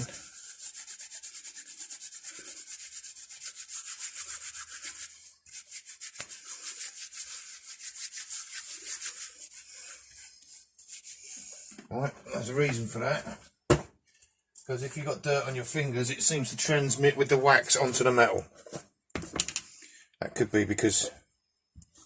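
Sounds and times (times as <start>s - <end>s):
hands rubbing fingers: 0.0s - 11.8s.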